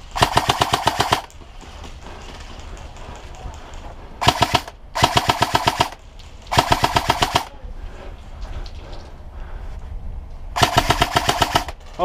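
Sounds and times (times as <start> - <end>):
airsoft rifle full-auto bursts: 0.0 - 1.3, 4.2 - 7.5, 10.6 - 11.8.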